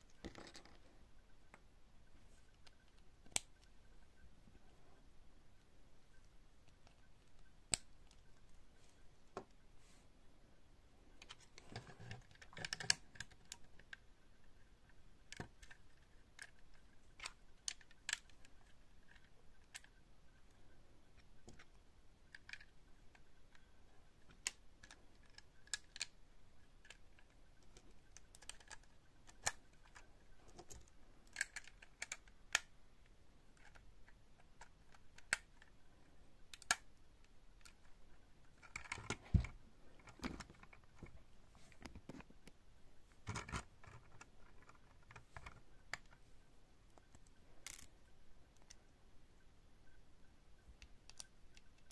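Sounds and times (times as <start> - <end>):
plastic bricks clicking: 0.1 - 0.9, 24.2 - 26.2, 26.8 - 32.7, 36.5 - 37.9.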